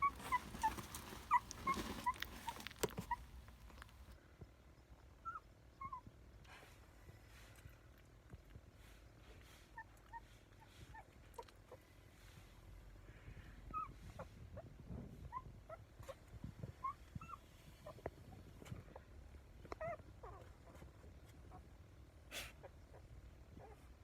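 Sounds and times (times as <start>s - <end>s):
puppy whimpering: 0.0s - 3.3s, 5.2s - 6.1s, 13.7s - 18.7s, 19.6s - 21.6s, 23.6s - 23.9s.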